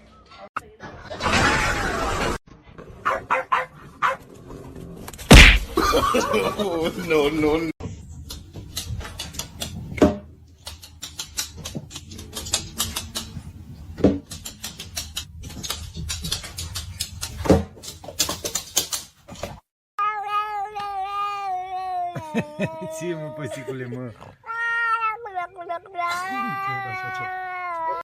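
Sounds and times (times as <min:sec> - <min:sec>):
loud thumps: 0:05.3 - 0:05.9
irregular clicks and scratchy taps: 0:10.6 - 0:13.3, 0:14.2 - 0:19.1.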